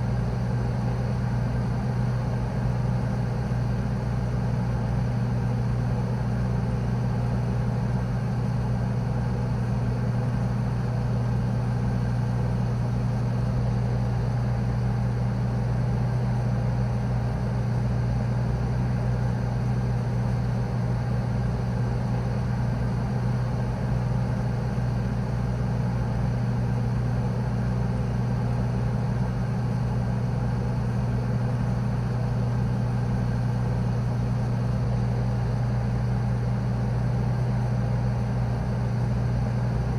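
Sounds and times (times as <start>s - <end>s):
freezer refrigeration hum: 0.0s - 39.9s.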